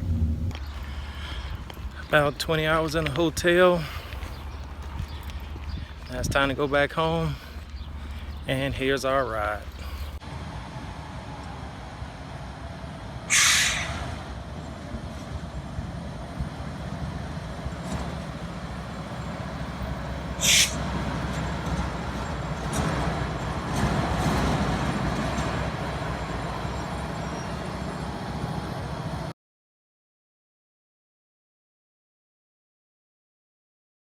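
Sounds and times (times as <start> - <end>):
diesel locomotive running: 0.0 - 29.3
brake air hissing: 13.3 - 14.1, 20.4 - 20.9.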